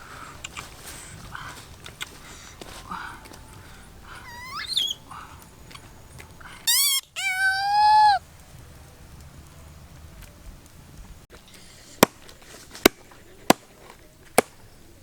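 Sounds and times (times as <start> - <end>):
dog yelping: 4.1 - 5.4, 6.7 - 8.2
dog whimpering and whining: 4.2 - 5.1, 6.7 - 8.2.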